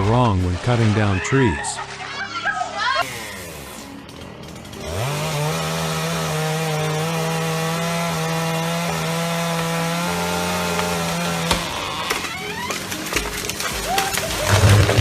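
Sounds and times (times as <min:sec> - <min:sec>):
chainsaw cutting wood: 0:03.0 - 0:15.0.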